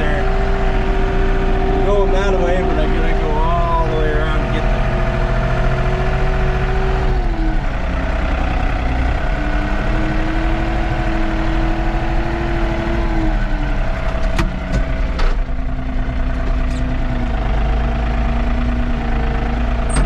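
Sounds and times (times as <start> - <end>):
tractor diesel engine running: 0.0 - 20.0.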